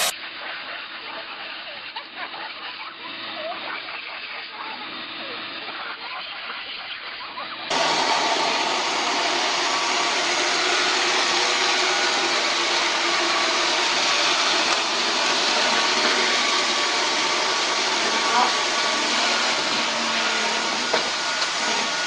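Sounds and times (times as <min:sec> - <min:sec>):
small electric motor whirring: 0:07.7 - 0:22.0.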